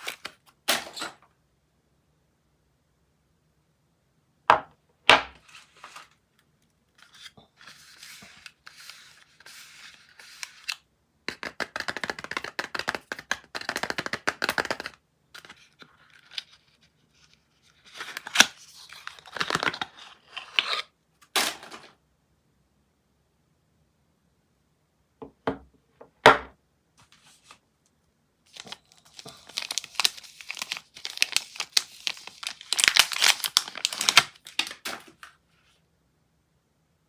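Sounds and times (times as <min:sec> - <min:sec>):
wrapper crinkling and tearing: 0:00.0 - 0:01.2, 0:17.8 - 0:20.8, 0:28.5 - 0:35.3.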